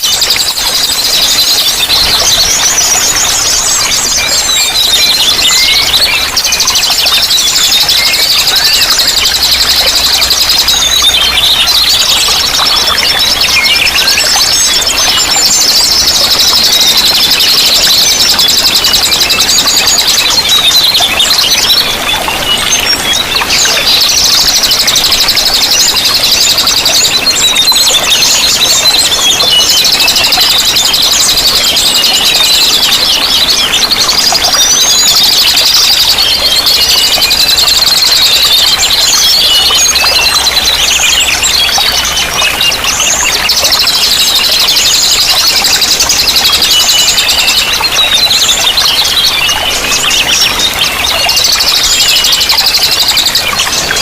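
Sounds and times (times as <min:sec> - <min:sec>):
running water: 0:00.0 - 0:54.0
songbirds chirping and trilling: 0:00.0 - 0:54.0.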